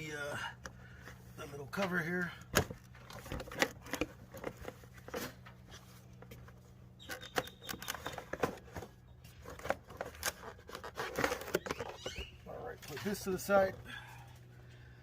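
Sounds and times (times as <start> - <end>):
plastic cover clicks and rustling: 7.0 - 12.2.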